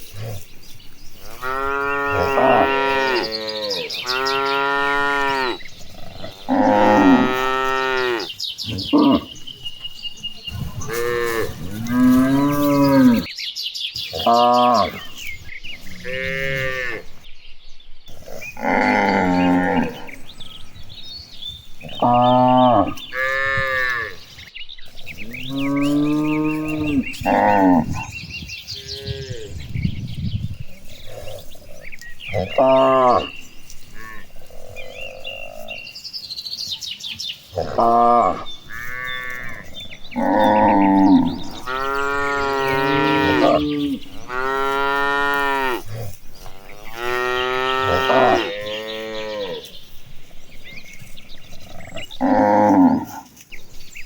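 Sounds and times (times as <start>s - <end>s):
cattle mooing: 1.3s - 9.3s, 10.7s - 13.3s, 15.8s - 17.1s, 18.2s - 20.2s, 25.2s - 28.1s, 32.3s - 33.4s, 37.6s - 49.7s, 51.6s - 53.3s.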